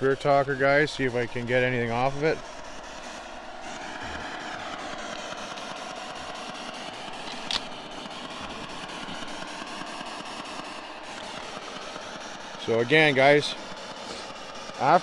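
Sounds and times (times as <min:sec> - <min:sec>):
static with rapid ticks: 0:00.0 - 0:15.0
sharp click: 0:07.3 - 0:07.7.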